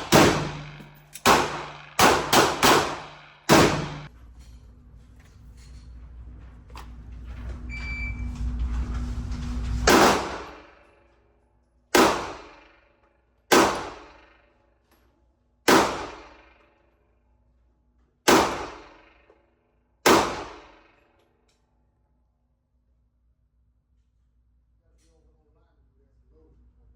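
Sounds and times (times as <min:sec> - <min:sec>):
loud sharp bangs: 0:00.0 - 0:04.1, 0:09.8 - 0:10.8, 0:11.9 - 0:12.7, 0:13.5 - 0:14.2
low rumble: 0:00.0 - 0:10.7.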